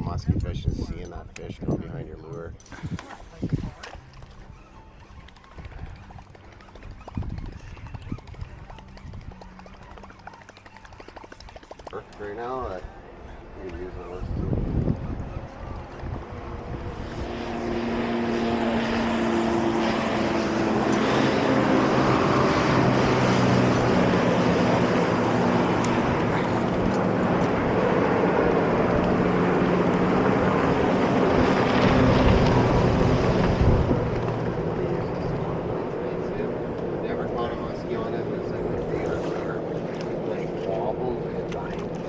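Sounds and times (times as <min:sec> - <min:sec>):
outboard motor running: 0:02.4 - 0:42.0
wind and water rushing: 0:12.6 - 0:42.0.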